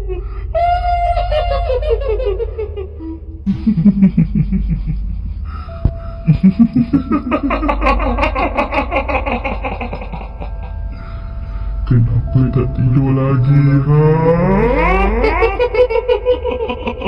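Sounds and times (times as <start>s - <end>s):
low steady drone: 0.0s - 17.0s
cackling laugh: 1.4s - 5.7s, 6.3s - 11.1s, 14.6s - 17.0s.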